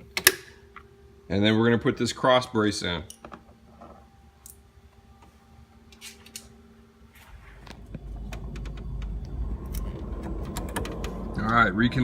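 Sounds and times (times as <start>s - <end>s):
low rumble: 7.2s - 12.0s.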